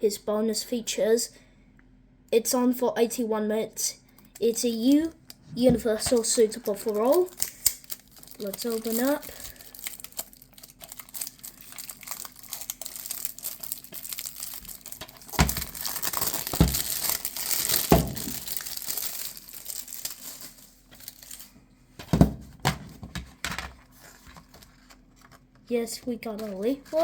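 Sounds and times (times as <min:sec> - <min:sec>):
plastic wrapping crinkling and tearing: 0:05.8 - 0:21.6, 0:23.7 - 0:27.0
plastic case knocks: 0:22.0 - 0:23.3.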